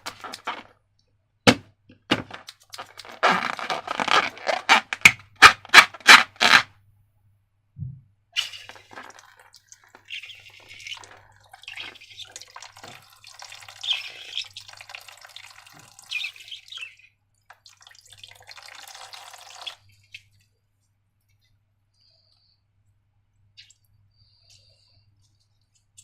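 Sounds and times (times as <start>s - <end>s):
slime squelching and crackling: 0.0s - 0.7s, 2.1s - 6.6s.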